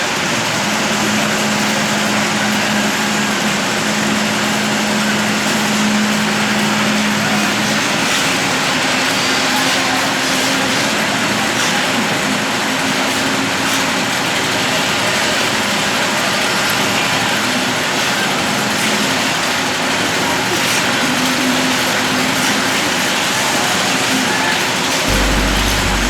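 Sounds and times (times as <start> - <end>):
humming tone: 25.1 - 26.0
motor running steadily: 25.1 - 26.0.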